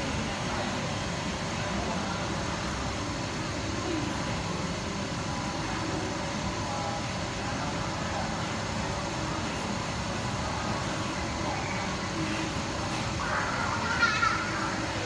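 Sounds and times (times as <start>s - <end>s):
hot-air blower hissing: 0.0s - 15.0s.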